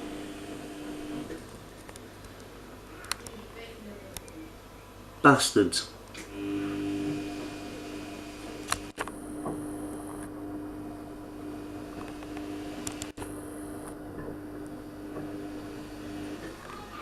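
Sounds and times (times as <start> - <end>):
steady hum: 0.0 - 3.2, 6.2 - 16.6.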